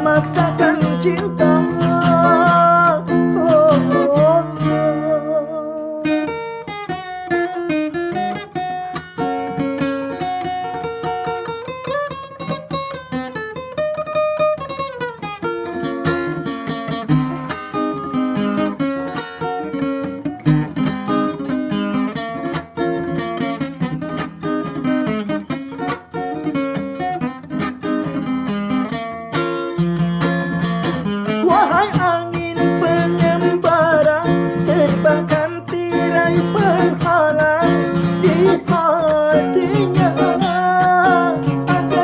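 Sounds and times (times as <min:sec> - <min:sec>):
person singing: 0:00.0 - 0:06.7, 0:31.2 - 0:42.0
acoustic guitar melody: 0:00.0 - 0:42.0.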